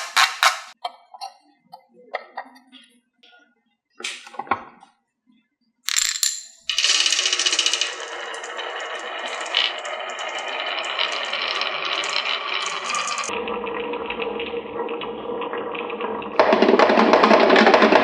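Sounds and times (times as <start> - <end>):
marbles rolling down wooden track: 5.9 - 13.3, 16.4 - 18.0.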